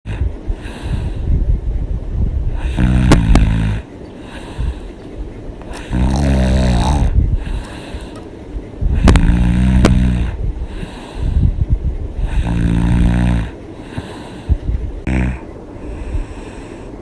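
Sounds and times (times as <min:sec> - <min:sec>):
quiet breathing: 0:00.1 - 0:03.1, 0:03.7 - 0:17.0
woman snoring loudly: 0:02.6 - 0:03.9, 0:05.8 - 0:07.2, 0:09.0 - 0:10.4, 0:12.2 - 0:13.6, 0:15.0 - 0:15.4
sharp clicks in snore: 0:02.7 - 0:03.8, 0:05.6 - 0:07.8, 0:09.0 - 0:10.4.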